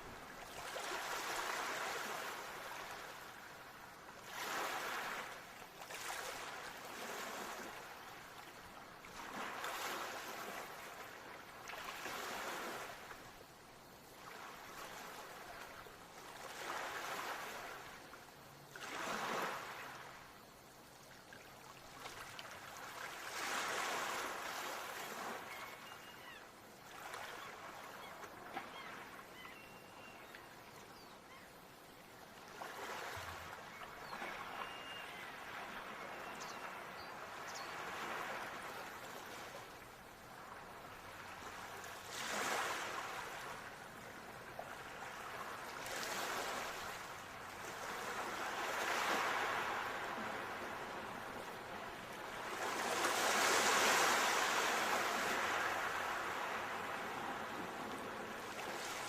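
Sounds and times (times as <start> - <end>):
faint short high calls: 25.4 - 26.4, 33.6 - 36.7
ocean waves washing: 45.4 - 59.0.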